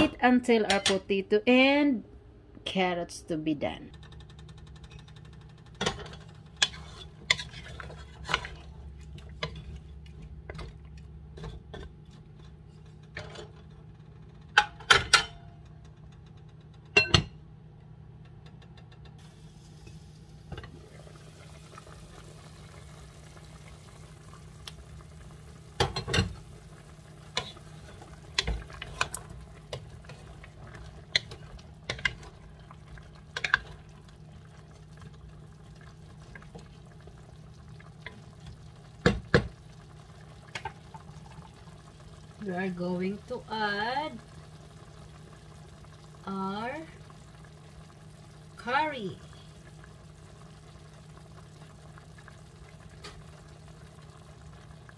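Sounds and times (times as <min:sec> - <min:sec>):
pot simmering hiss: 0:02.6 - 0:54.9
utensil scraping cooking pot: 0:06.1 - 0:10.7, 0:27.2 - 0:33.9.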